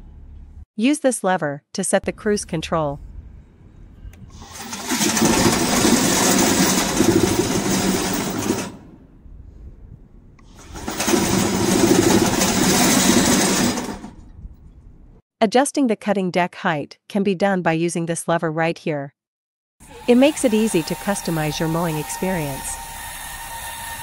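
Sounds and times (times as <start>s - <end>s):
faint low hum: 2.0s - 4.3s
crawler mower running: 4.4s - 9.1s, 10.5s - 14.2s.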